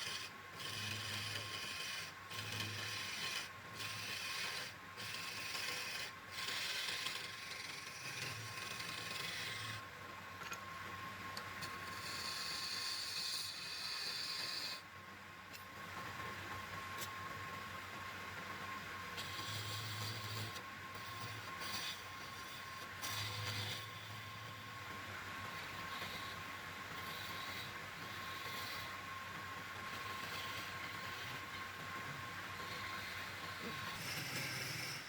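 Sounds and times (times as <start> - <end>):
tool rasping on wood: 0.0 - 9.8, 11.7 - 14.8, 19.2 - 24.5, 25.6 - 29.0, 29.9 - 31.5, 32.6 - 35.0
machine whine: 16.6 - 35.0.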